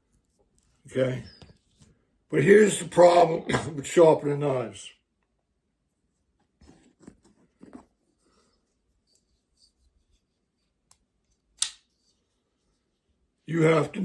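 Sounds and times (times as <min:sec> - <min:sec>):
sharp click: 0:11.6 - 0:11.8.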